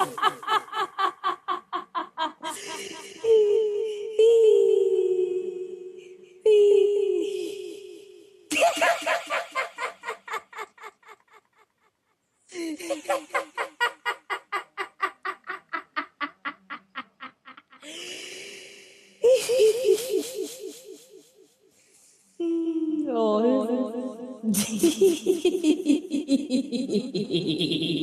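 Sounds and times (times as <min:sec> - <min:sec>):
edited human laugh: 0:00.0 - 0:03.2, 0:12.6 - 0:18.0.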